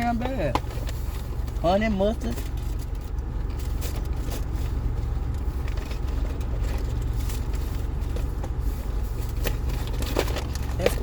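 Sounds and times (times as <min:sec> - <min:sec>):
car engine running: 0:00.0 - 0:11.0.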